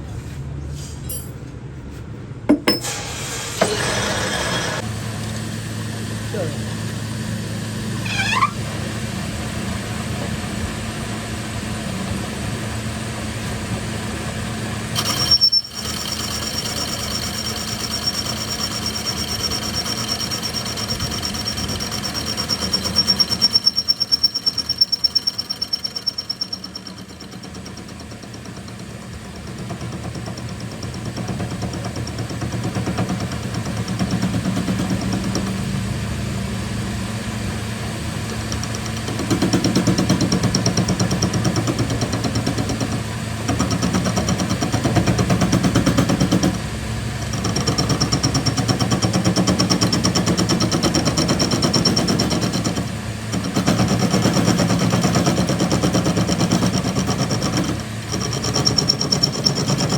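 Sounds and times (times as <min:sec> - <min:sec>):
short rising squeak: 0:07.9 - 0:08.8, 0:15.0 - 0:27.8, 0:58.1 - 0:59.9
high steady whine: 0:15.0 - 0:26.9
machine humming: 0:15.0 - 0:27.2
fast rattle: 0:15.0 - 0:35.6, 0:47.3 - 0:59.9.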